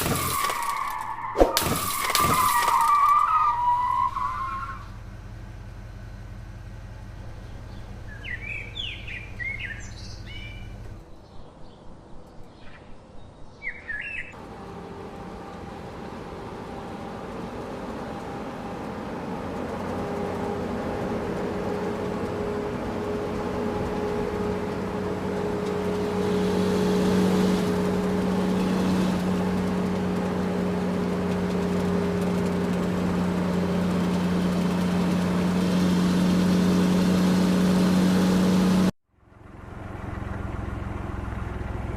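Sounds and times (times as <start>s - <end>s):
birds chirping: 7.1s - 14.4s.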